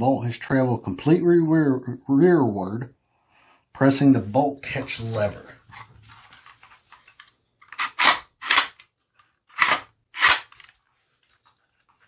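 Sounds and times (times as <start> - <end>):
gun bolt racking metallic clacks: 7.2 - 8.9, 9.5 - 10.8.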